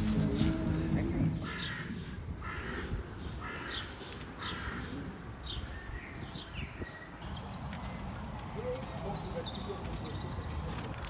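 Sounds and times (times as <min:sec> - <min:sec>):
crow cawing: 0:01.4 - 0:05.2.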